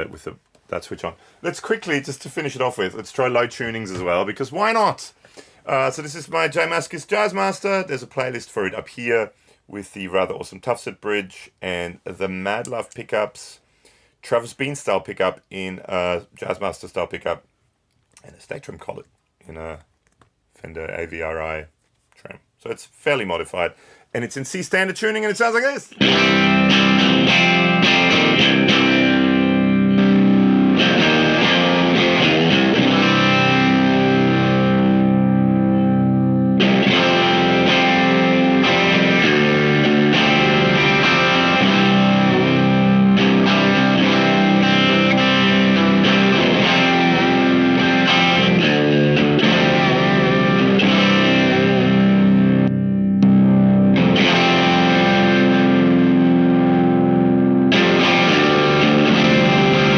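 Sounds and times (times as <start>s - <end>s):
distorted electric guitar chords: 26.0s - 59.9s.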